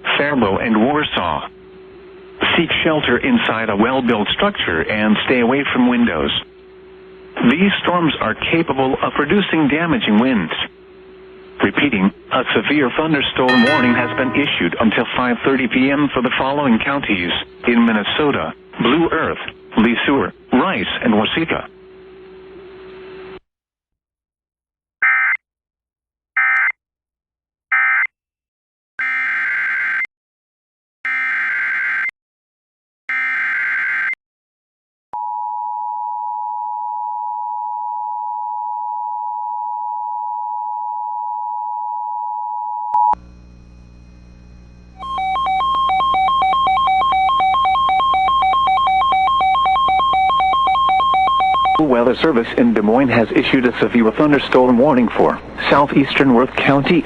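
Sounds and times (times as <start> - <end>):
two-tone attention signal: 13.5 - 14.9, 45.0 - 51.9.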